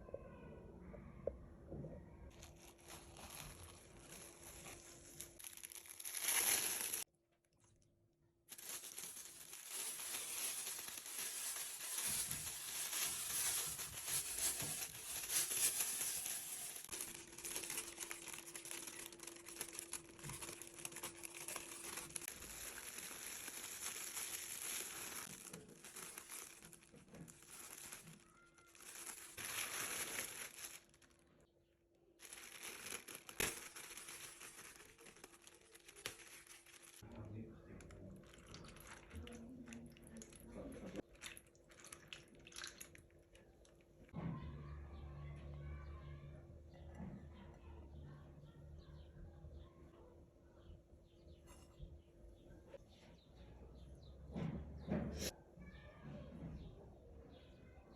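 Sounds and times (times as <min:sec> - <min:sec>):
plastic bag crinkling: 0:02.3 - 0:07.1, 0:08.5 - 0:31.5, 0:32.2 - 0:43.0.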